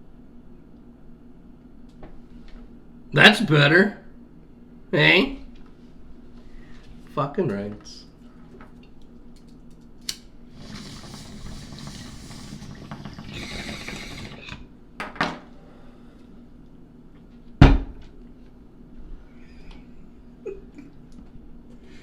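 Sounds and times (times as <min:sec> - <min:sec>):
hissing: 0:10.5 - 0:14.7.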